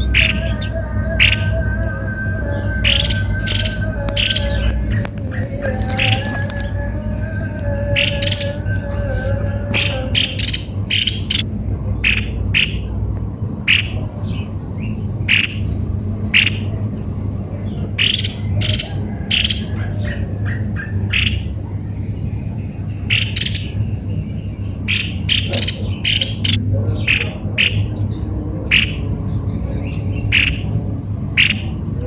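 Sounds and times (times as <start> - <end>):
bird calling sharp notes: 0.0 - 12.9
steady low hum: 0.0 - 32.0.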